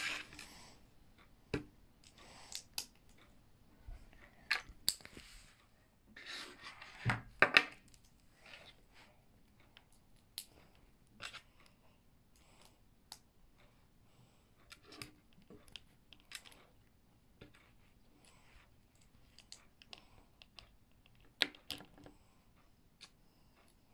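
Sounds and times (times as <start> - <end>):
plastic bricks clicking together: 19.0 - 22.1.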